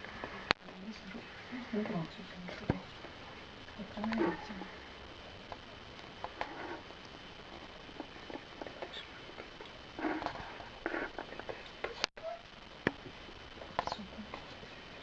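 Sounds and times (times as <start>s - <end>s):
small animals scrabbling: 5.4s - 15.0s.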